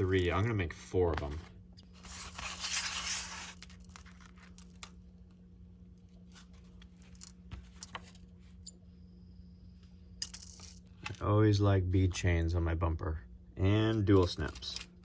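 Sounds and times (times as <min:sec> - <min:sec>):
steady low hum: 0:00.0 - 0:15.0
fishing line rasping rustle: 0:02.0 - 0:04.6.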